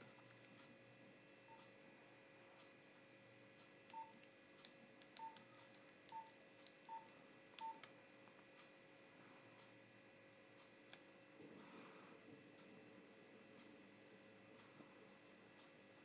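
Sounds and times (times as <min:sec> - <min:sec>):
short keypad beeps: 0:03.9 - 0:04.1.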